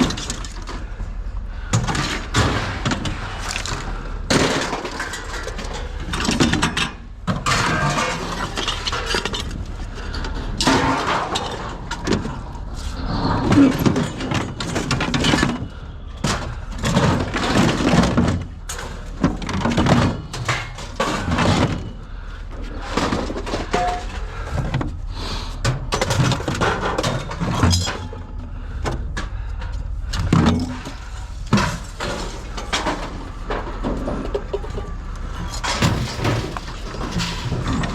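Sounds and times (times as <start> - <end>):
hard objects crashing and clanking: 1.7 - 12.7, 13.5 - 24.8, 30.2 - 37.9.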